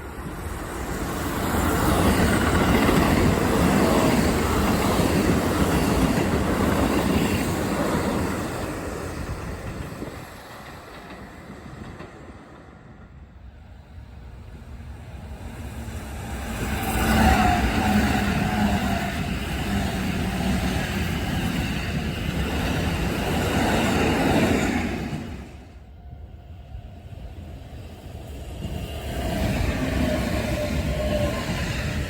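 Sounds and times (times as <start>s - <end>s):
train passing: 0.0s - 32.0s.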